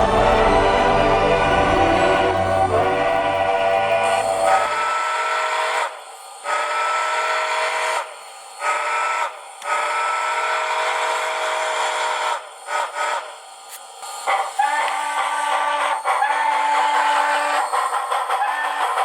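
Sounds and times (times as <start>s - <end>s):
steam whistle through small speaker: 1.9s - 13.4s.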